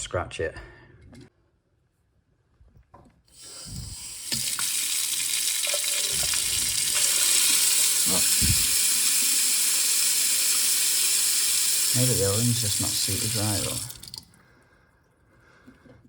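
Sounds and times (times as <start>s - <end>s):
tap water running into sink: 3.4s - 14.3s
low knocks in pipes: 8.2s - 8.8s.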